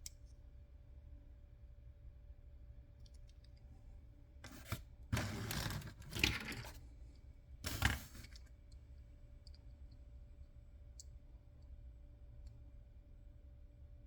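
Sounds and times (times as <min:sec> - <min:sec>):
packaging tearing and rustling: 0:04.5 - 0:06.8.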